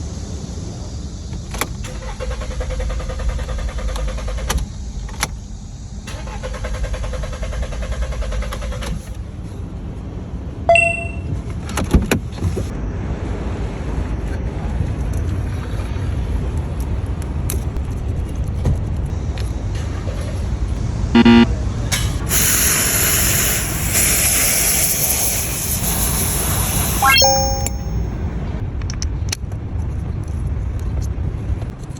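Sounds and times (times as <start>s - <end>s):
beep: 10.7s - 11.3s, 21.2s - 21.5s, 27.0s - 28.1s
short electronic chime: 10.7s - 11.3s, 21.2s - 21.5s, 27.0s - 28.1s
loud hiss: 22.3s - 27.1s
clicks: 27.0s - 28.0s.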